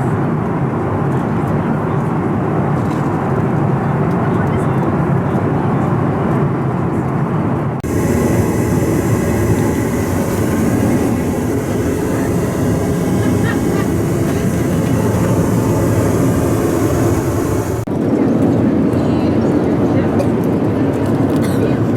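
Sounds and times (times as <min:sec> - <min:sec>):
airflow over fuselage: 0:07.8 - 0:17.9
jet engines rushing: 0:07.8 - 0:17.9.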